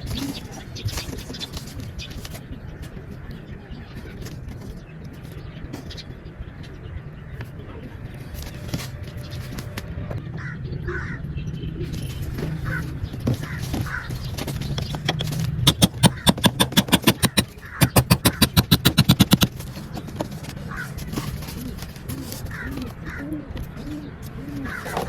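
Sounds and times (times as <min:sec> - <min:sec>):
loud rapid clatter: 0:14.8 - 0:19.6.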